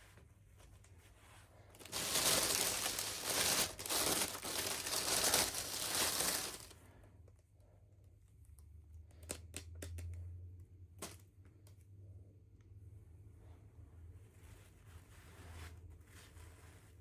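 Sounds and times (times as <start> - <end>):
plastic packaging crinkling: 1.8 - 6.8.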